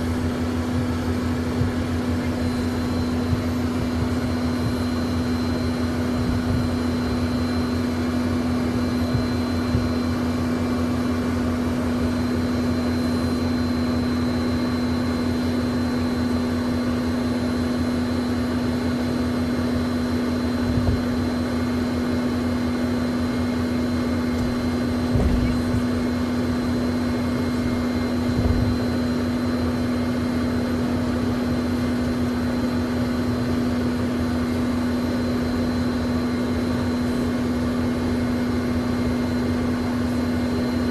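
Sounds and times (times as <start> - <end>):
jet engines droning and whining: 0.0 - 40.9
soft low thumps: 0.7 - 1.9, 24.4 - 25.9.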